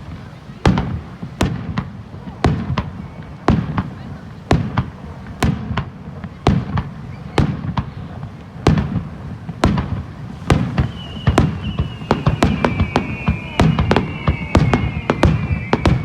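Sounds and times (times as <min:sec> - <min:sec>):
fireworks bursting with sharp bangs: 0:00.0 - 0:16.0
high steady whistling tone: 0:10.4 - 0:16.0.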